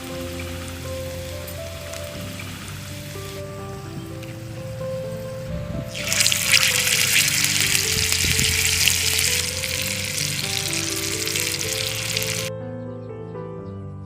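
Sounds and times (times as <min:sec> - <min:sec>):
food sizzling in hot oil: 0:00.0 - 0:03.6, 0:05.9 - 0:12.5
background music: 0:00.0 - 0:14.0.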